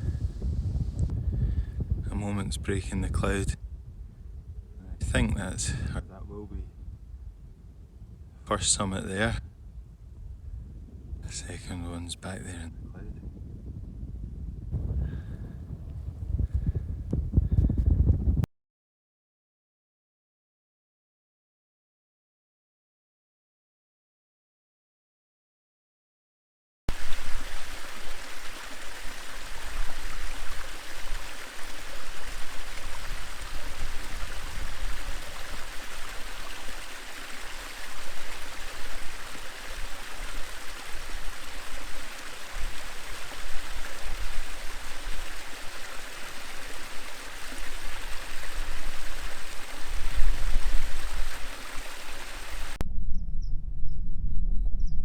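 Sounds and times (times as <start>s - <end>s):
stream water rushing: 26.9s - 52.8s
low rumble: 52.8s - 55.0s.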